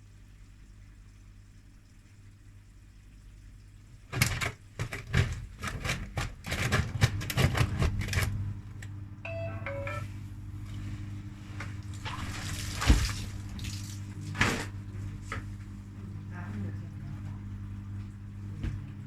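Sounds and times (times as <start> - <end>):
washing machine hum: 0.0 - 19.0
washing machine knocking: 4.0 - 10.7, 11.6 - 19.0
electronic beeps: 9.3 - 10.1.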